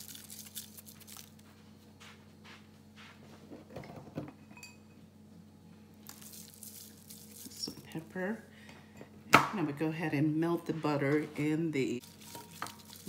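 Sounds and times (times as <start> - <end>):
dishes and utensils clinking: 3.8 - 5.0.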